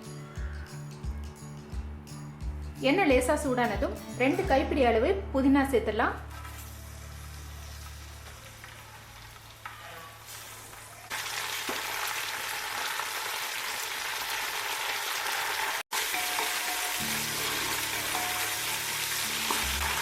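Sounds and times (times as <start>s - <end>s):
leaves sizzling in hot oil: 6.2s - 20.0s.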